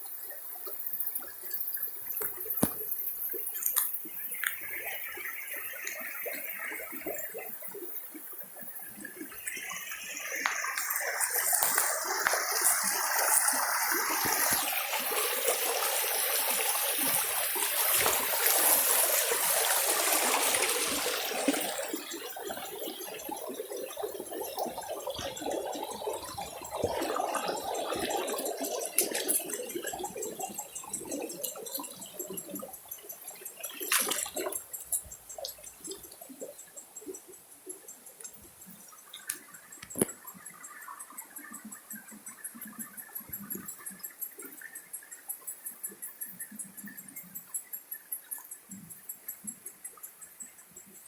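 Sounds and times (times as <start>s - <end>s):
running water: 0.0s - 45.2s.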